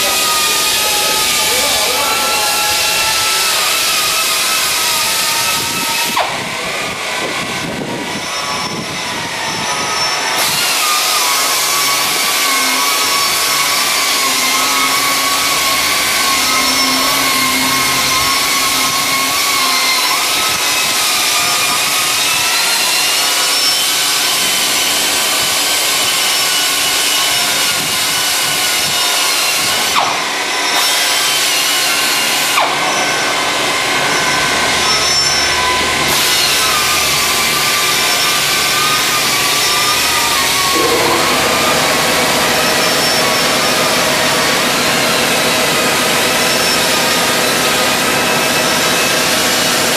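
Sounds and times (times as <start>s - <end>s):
pneumatic polisher whine: 0.0s - 49.9s.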